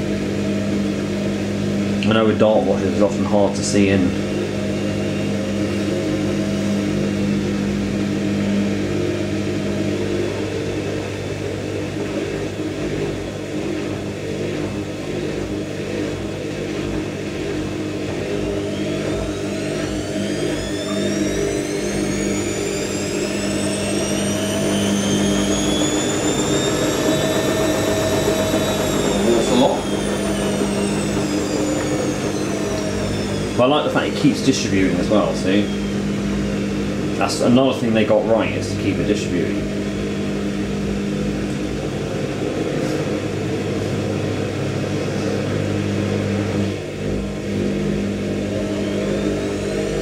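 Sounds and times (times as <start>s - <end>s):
motor hum: 0.0s - 50.0s
rising motor whine: 0.0s - 50.0s
washing machine drum turning: 15.4s - 37.2s.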